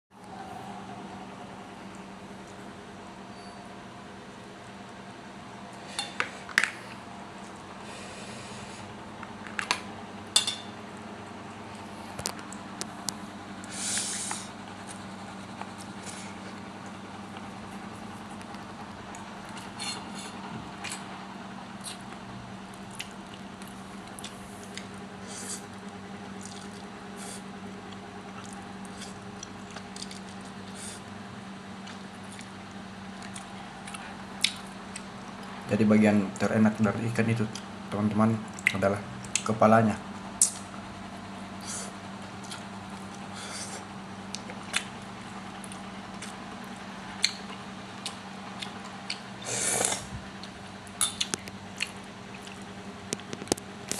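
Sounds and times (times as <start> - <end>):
steady low hum: 0.1 - 53.9
dishes clinking: 10.4 - 10.7
soft squishy food handling: 14.5 - 30.8, 31.7 - 35.6, 42.0 - 53.9.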